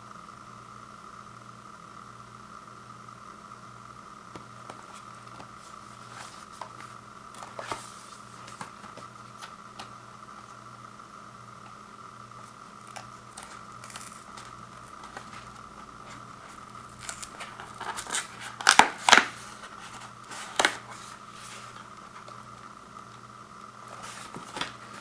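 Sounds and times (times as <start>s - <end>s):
electrical hum: 0.0s - 25.0s
cardboard and plastic rustling: 4.3s - 10.6s, 12.4s - 23.2s, 23.8s - 25.0s.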